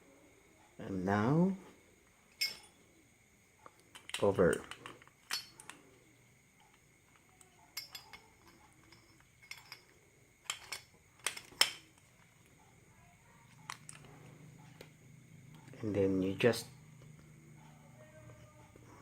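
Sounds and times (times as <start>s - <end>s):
metal lock parts clicking: 3.7s - 5.8s, 6.6s - 12.2s, 13.6s - 14.1s.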